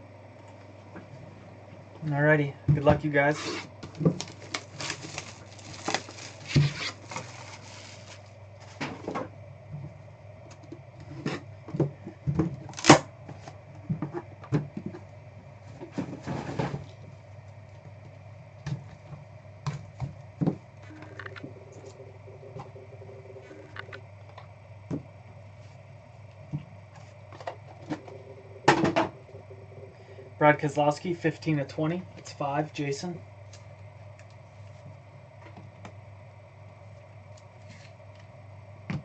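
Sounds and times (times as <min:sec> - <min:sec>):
low steady hum: 0:00.0 - 0:39.0
wrapper rustling and tearing: 0:04.1 - 0:08.4.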